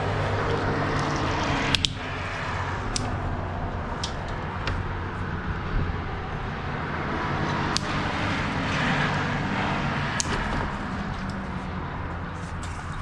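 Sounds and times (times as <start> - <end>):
low engine hum: 0.0 - 13.0
sharp clicks: 1.7 - 2.1, 7.7 - 8.1.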